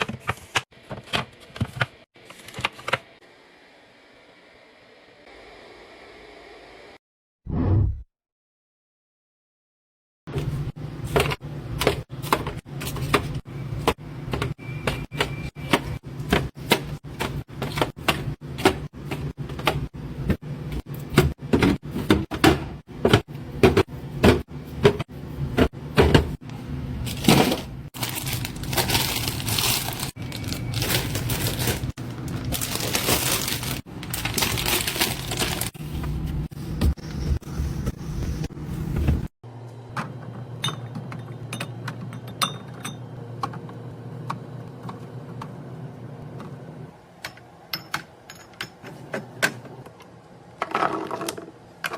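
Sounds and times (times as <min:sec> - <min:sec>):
packaging rustling and crinkling: 0:27.0 - 0:36.2.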